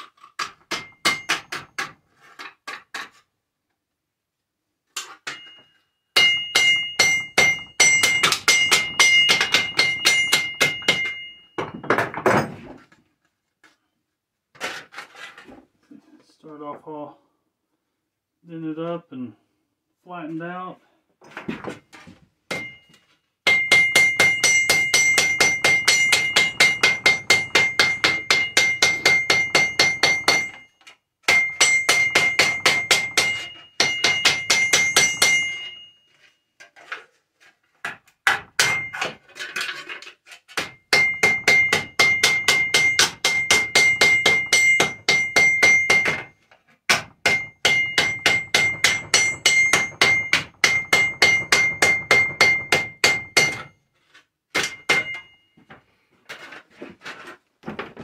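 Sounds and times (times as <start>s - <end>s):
hammer beating tin cans: 0.0s - 2.0s, 5.0s - 12.6s, 22.5s - 35.9s, 37.8s - 53.8s, 54.5s - 55.5s.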